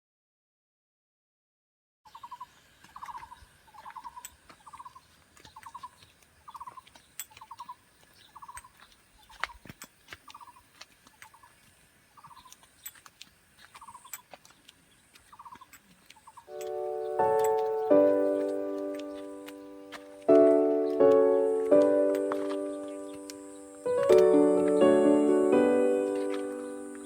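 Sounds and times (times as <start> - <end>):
bird singing low trilled notes: 16.4 - 27.0.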